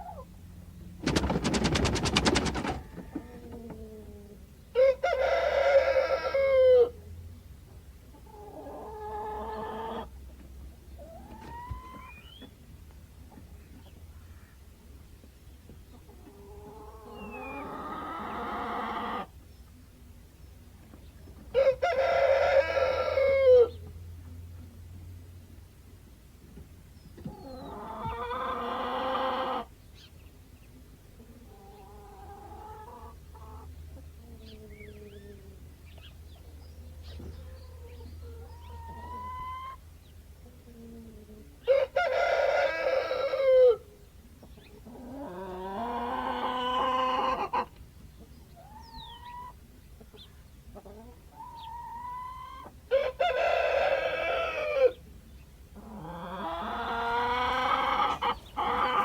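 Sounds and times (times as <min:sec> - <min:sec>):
chicken clucking: 0:01.0 - 0:07.0, 0:07.6 - 0:19.4, 0:27.1 - 0:59.0
rooster crowing: 0:04.8 - 0:07.0, 0:21.6 - 0:23.7, 0:41.6 - 0:43.9, 0:52.9 - 0:55.0.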